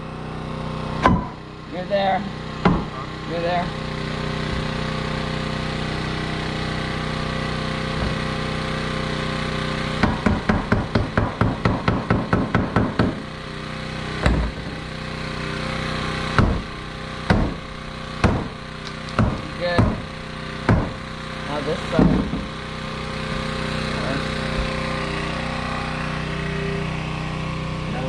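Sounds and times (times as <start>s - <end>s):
steady engine-like hum: 0.0s - 28.0s
hammer tapping on wood: 2.6s - 2.9s, 10.0s - 13.2s, 18.2s - 20.0s, 20.7s - 21.0s, 22.0s - 22.5s.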